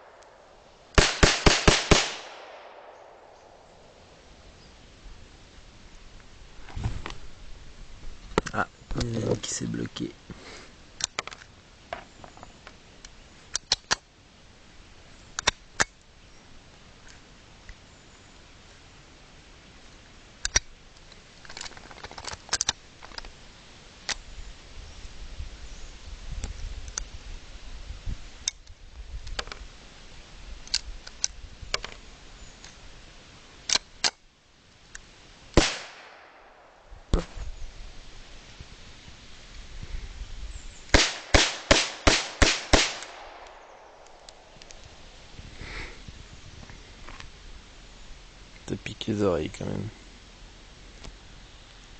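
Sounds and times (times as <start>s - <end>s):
loud pistol shot: 1.0s - 3.6s, 35.6s - 37.4s, 40.9s - 44.5s
pistol mechanical clicks: 13.0s - 14.1s, 20.4s - 23.2s, 33.7s - 34.2s, 40.9s - 45.0s.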